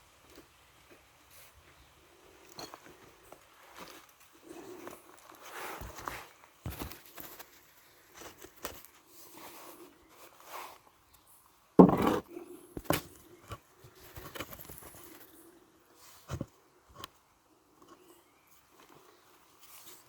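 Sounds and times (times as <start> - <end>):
thump: 11.8 - 12.2.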